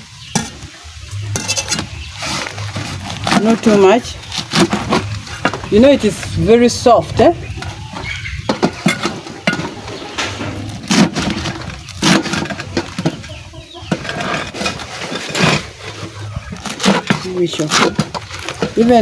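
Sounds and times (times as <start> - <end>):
low steady rumble: 0.0 - 14.1.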